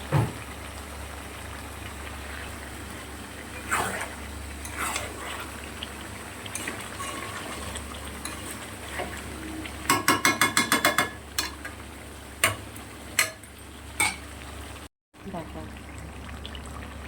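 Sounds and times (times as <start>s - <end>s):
chicken sizzling in a pot: 0.0s - 17.0s
metal spatula clanking on pot: 9.8s - 11.7s, 12.4s - 14.2s.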